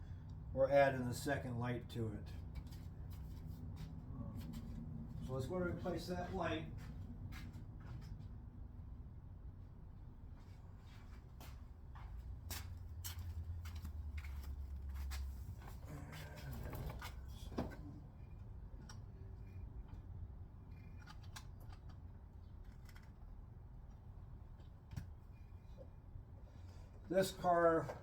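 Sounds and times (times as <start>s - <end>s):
hands and tools clicking and scraping: 20.7s - 23.3s.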